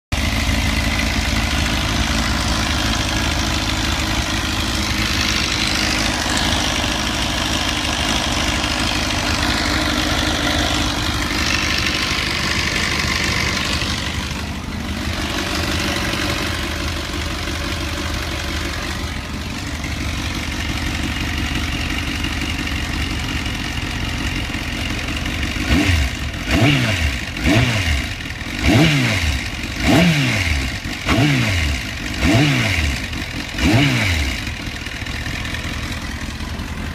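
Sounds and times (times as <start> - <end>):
motorcycle engine idling and revving: 0.0 - 36.9.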